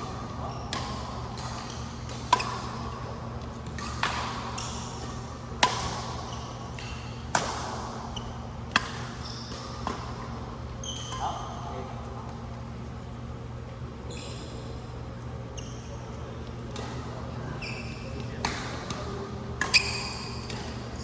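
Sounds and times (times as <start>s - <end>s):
shoe squeaks: 0.4s - 0.7s, 9.1s - 9.5s, 10.8s - 11.6s, 14.0s - 14.8s, 15.5s - 16.2s, 17.5s - 18.4s, 19.6s - 21.0s
racket hitting shuttlecock: 0.7s - 2.9s, 3.7s - 8.0s.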